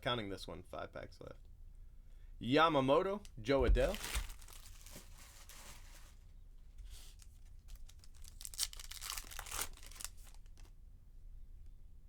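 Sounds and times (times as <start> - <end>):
wrapper crinkling and tearing: 3.8 - 6.2, 7.0 - 10.7.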